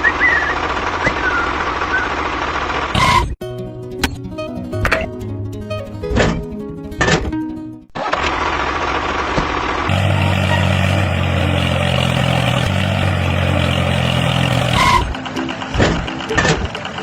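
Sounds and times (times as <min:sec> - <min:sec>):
vehicle engine idling: 0:00.0 - 0:03.0, 0:08.0 - 0:17.0.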